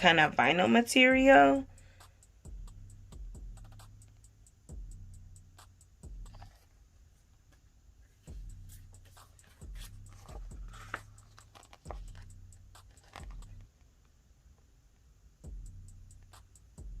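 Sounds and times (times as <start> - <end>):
packaging crinkling and rustling: 9.5 - 12.3, 12.9 - 13.7.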